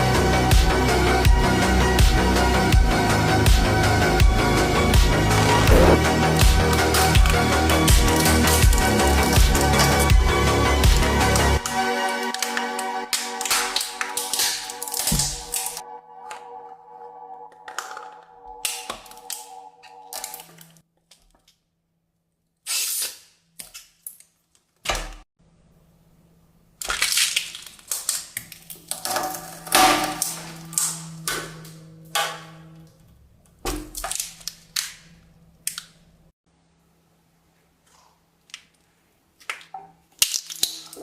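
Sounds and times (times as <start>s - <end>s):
crackling scrapes: 5.3s - 6.1s.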